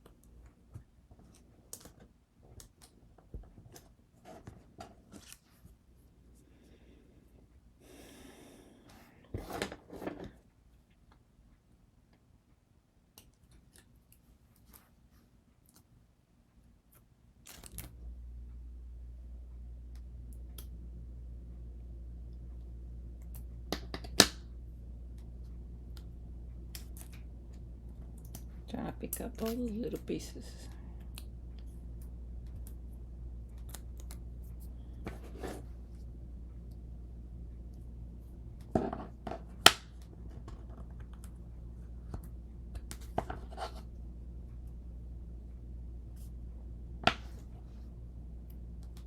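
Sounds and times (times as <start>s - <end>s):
steady low hum: 0.0s - 13.0s, 16.2s - 49.0s.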